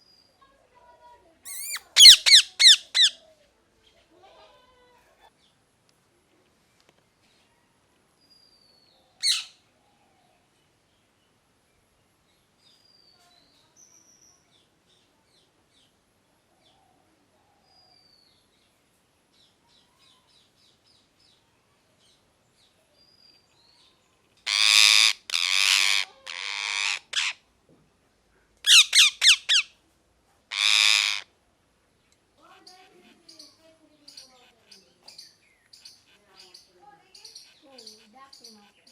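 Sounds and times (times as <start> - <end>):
parrot chirps and whistles: 1.5 - 3.2, 28.7 - 29.7
parrot squawking harshly: 1.5 - 3.2, 9.2 - 9.5, 24.5 - 27.4, 28.6 - 29.7, 30.5 - 31.3.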